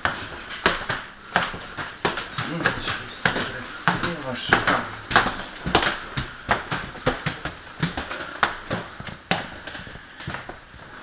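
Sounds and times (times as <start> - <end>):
footsteps climbing stairs: 0.0 - 11.0.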